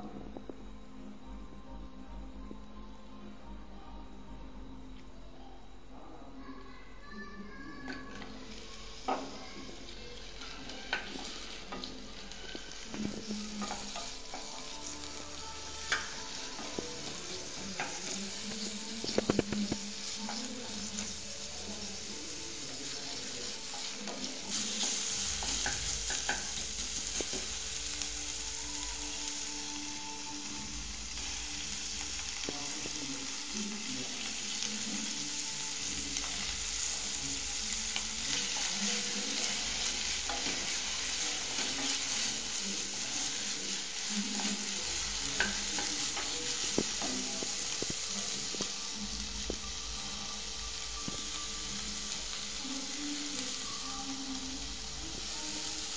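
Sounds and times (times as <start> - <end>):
food sizzling in a pan: 6.4 - 55.9.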